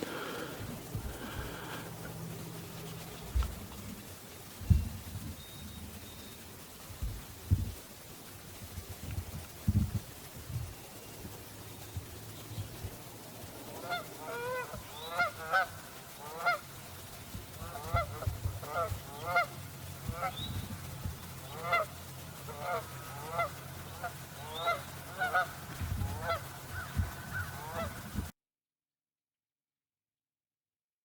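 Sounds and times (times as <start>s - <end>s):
geese honking: 13.5s - 28.2s.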